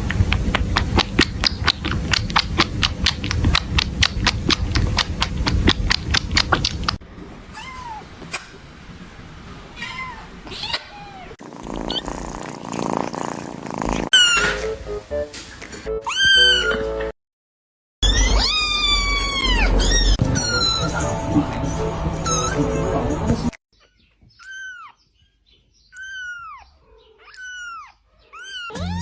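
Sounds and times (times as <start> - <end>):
rapid regular clicking: 0.0 - 7.0
kitten meowing: 16.0 - 16.8, 18.0 - 20.9, 26.0 - 29.0.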